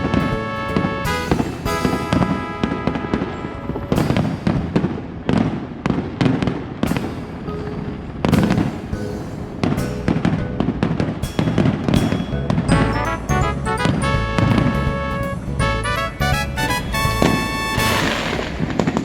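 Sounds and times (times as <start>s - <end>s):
fireworks bangs: 0.0s - 7.0s, 16.6s - 19.0s
low rumble of fireworks bursts: 0.0s - 9.0s, 9.6s - 19.0s.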